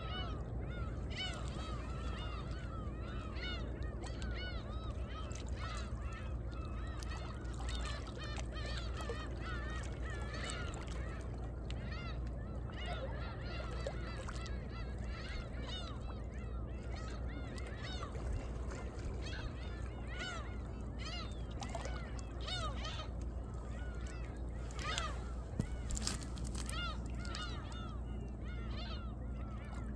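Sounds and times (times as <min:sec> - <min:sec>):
waves lapping among rocks: 0:21.4 - 0:28.4
birds honking calls: 0:22.4 - 0:29.9.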